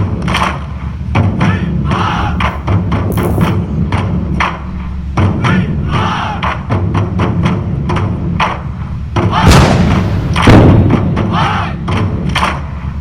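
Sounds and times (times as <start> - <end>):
percussion-heavy music: 1.2 - 13.0
loud drum hits: 9.2 - 11.7.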